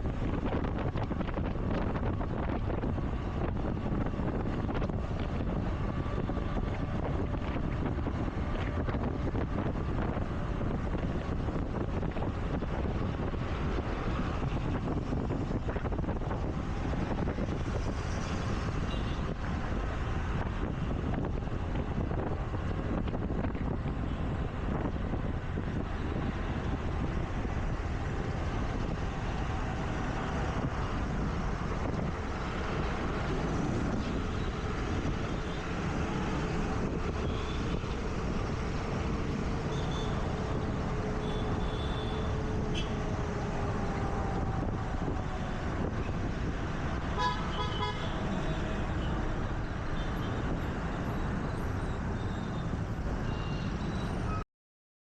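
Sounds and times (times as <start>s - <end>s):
surrounding traffic: 0.0s - 54.4s
wind noise: 0.0s - 54.4s
horn honking: 41.2s - 43.0s, 47.2s - 48.6s.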